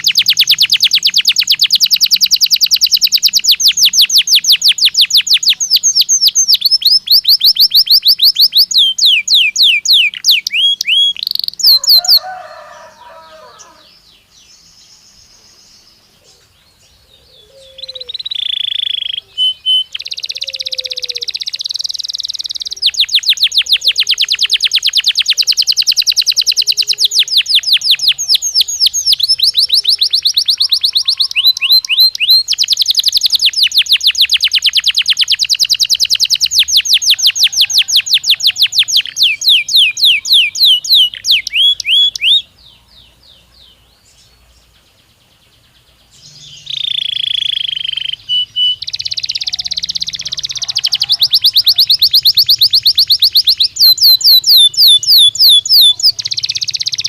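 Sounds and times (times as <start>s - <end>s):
canary singing fast trills: 0.0s - 57.0s.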